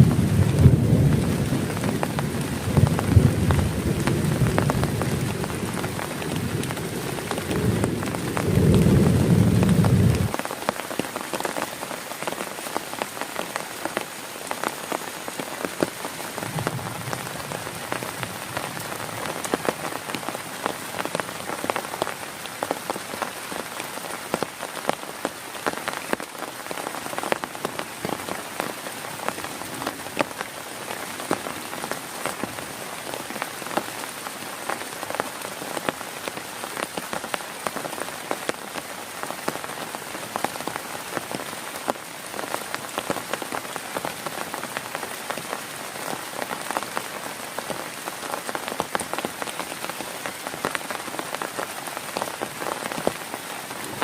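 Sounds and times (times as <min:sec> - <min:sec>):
low rumble of thunder: 0:00.0 - 0:10.3, 0:16.4 - 0:19.4
heavy rain on a tent: 0:00.0 - 0:54.0.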